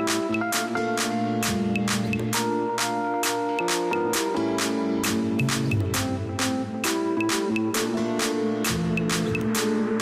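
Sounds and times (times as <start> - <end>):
electronic beat with drum hits: 0.0 - 10.0
held synth chords: 0.0 - 10.0.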